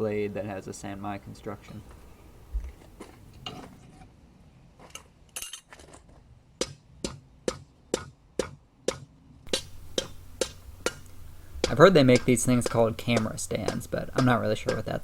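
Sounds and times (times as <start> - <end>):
hammer blows on steel: 6.6 - 15.0.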